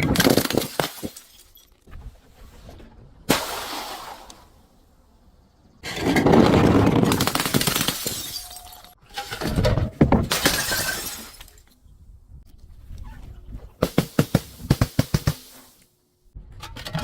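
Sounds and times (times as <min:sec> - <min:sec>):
glass bottle shattering: 0:00.1 - 0:01.8, 0:07.0 - 0:09.6, 0:10.3 - 0:11.7.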